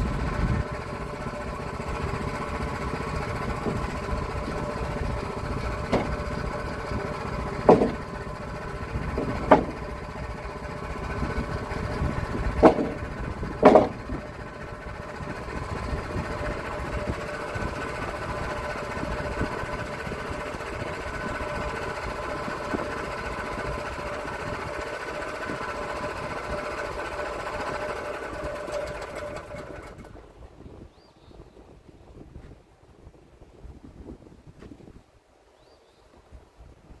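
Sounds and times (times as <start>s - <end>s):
sawmill mechanical drone: 0.0s - 30.5s
sharp knocks: 5.6s - 6.9s, 7.5s - 8.2s, 9.1s - 10.0s, 12.5s - 14.3s.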